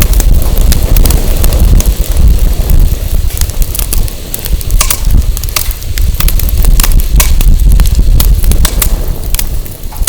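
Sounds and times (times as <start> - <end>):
firewood crackling and popping: 0.0 - 10.0
wind buffeting microphone: 0.0 - 10.0.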